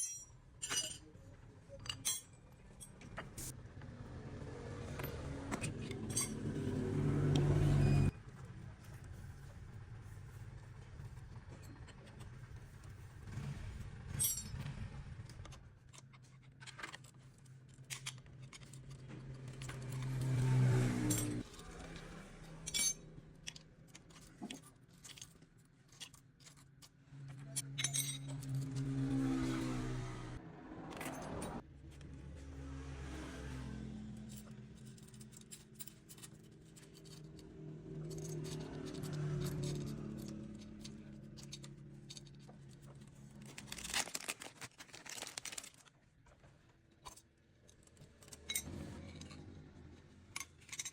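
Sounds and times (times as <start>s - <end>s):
metallic clinks and scrapes: 0.0s - 3.6s, 4.9s - 8.2s, 10.1s - 30.0s, 30.9s - 32.0s, 33.5s - 45.9s, 46.9s - 50.9s
motorcycle engine revving: 3.5s - 8.1s, 13.0s - 15.4s, 19.1s - 23.1s, 27.2s - 34.8s, 37.1s - 42.4s.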